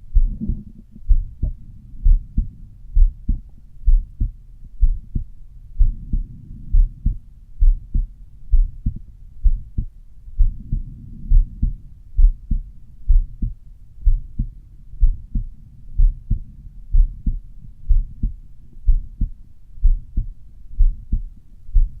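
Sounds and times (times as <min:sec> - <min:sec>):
heartbeat thuds: 0:00.0 - 0:22.0
soft low rushing noise: 0:00.0 - 0:22.0.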